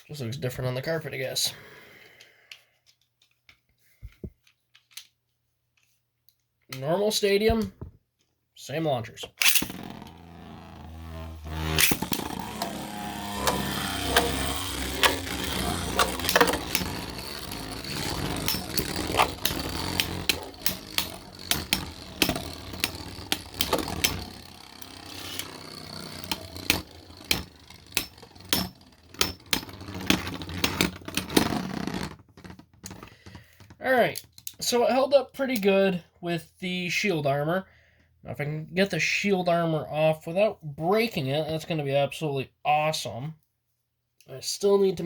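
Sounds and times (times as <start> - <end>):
spinning tops clashing: 9.4 - 31.6
spinning tops whirring: 9.4 - 32.2.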